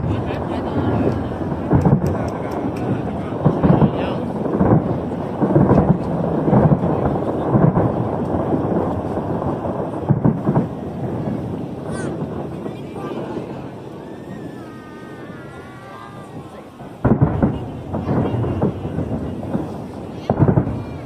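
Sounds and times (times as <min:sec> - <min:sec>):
fireworks crackling: 0:00.0 - 0:21.0
fireworks shells exploding: 0:00.0 - 0:21.0.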